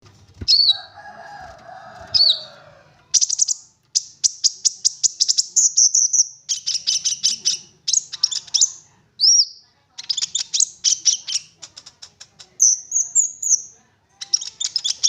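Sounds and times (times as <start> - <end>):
sunbird singing: 3.2 - 15.0.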